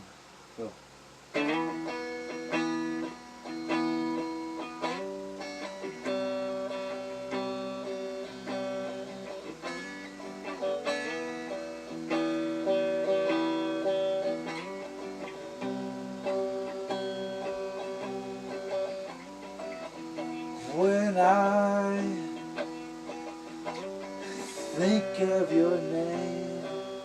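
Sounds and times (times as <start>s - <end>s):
guitar chords ringing: 1.3s - 27.0s.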